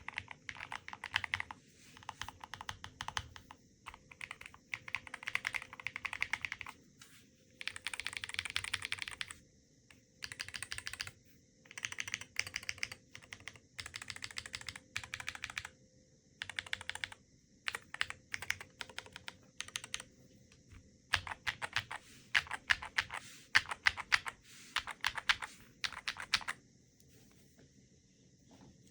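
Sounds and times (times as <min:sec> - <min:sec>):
mechanical keyboard typing: 0:00.0 - 0:06.7, 0:07.6 - 0:09.4, 0:10.2 - 0:15.7, 0:16.4 - 0:20.1, 0:21.1 - 0:26.6.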